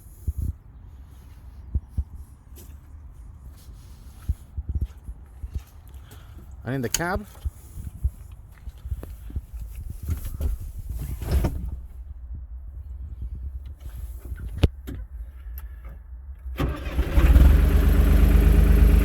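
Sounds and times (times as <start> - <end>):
tractor diesel engine starting and idling: 16.4 - 19.0.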